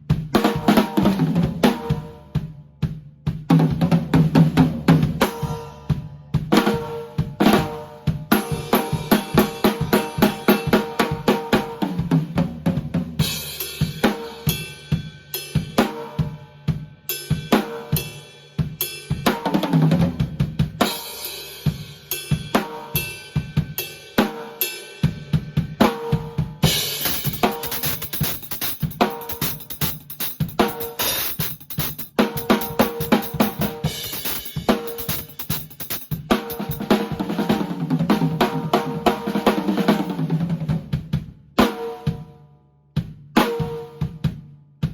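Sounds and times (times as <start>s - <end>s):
drum kit groove: 0.0s - 42.3s, 43.0s - 44.9s
muffled hi-hat: 26.6s - 37.3s.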